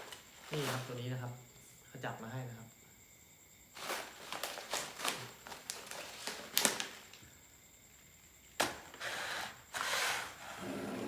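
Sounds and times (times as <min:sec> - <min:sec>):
plastic packaging clicks and rustles: 0:03.8 - 0:07.2.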